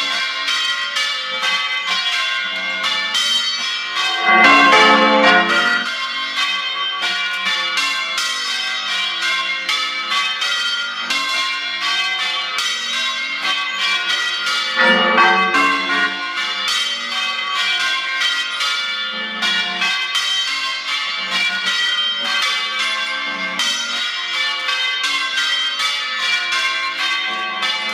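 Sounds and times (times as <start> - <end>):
church bells change ringing: 0.0 - 27.9.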